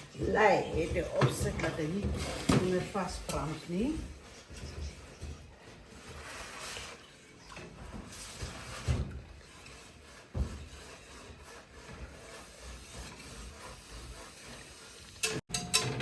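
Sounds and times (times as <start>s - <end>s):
spoon scraping cooking pot: 0.0s - 7.7s, 12.7s - 16.0s.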